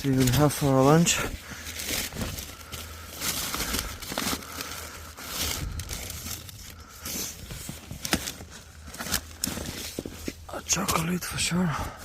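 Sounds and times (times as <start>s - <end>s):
plastic packaging crinkling: 0.0s - 11.3s.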